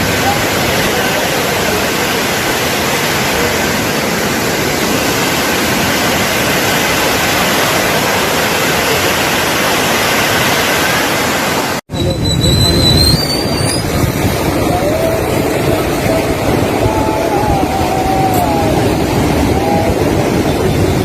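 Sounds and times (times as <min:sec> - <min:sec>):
floodwater rushing: 0:00.0 - 0:11.8, 0:12.6 - 0:21.0.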